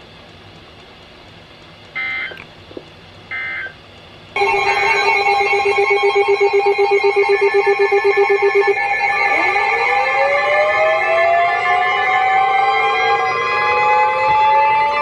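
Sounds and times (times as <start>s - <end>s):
loud steady attention tone: 3.3s - 15.0s
buzzing digital data bursts: 4.4s - 10.1s.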